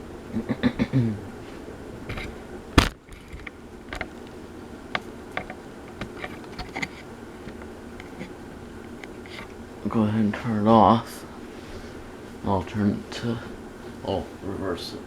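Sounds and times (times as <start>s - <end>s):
ceiling fan humming: 0.0s - 15.0s.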